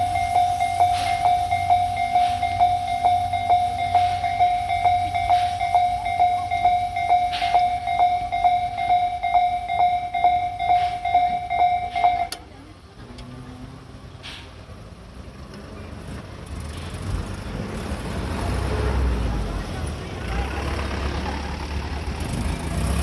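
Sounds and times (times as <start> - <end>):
level-crossing alarm ringing: 0.0 - 12.5.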